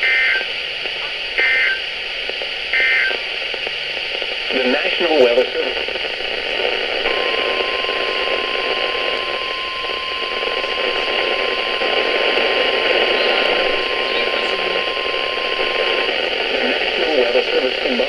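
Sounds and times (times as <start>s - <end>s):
radio static hiss: 0.0s - 18.0s
steady alarm tone: 7.1s - 18.0s.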